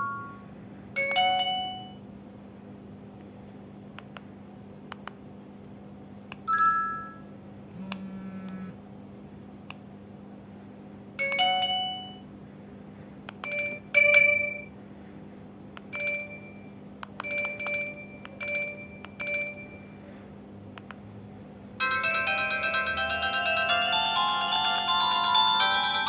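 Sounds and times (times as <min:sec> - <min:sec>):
low steady hum: 0:00.0 - 0:26.0
fast multi-note ringtone: 0:13.5 - 0:14.7, 0:21.8 - 0:26.0.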